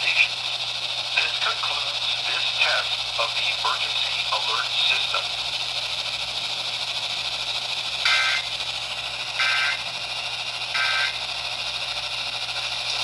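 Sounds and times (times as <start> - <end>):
radio static hiss: 0.0 - 0.4, 1.1 - 5.4
buzzy data tone bursts: 0.0 - 12.0.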